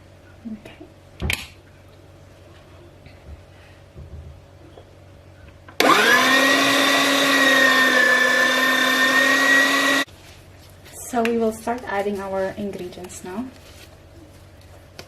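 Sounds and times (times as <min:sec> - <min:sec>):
food processor motor whirring: 0:05.8 - 0:10.1.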